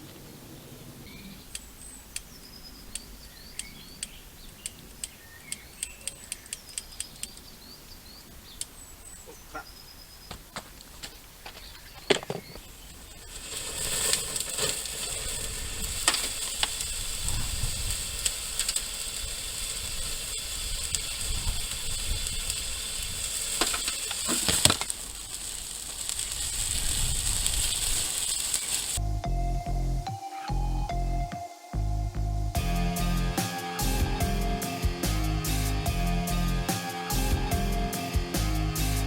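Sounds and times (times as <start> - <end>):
sharp cracks and pops: 10.3 - 29.0
thermite fizzing hiss: 12.6 - 29.0, 33.4 - 36.0.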